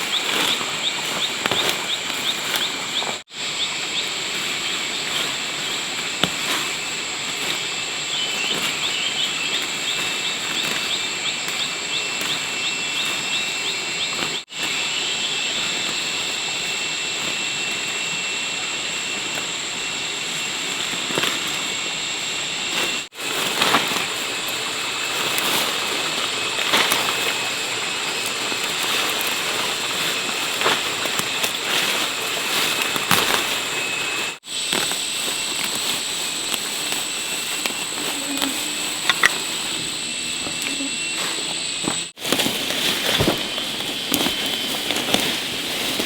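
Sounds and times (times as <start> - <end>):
chirps: 0.0 - 5.8, 6.7 - 20.0
even hiss: 0.0 - 46.0.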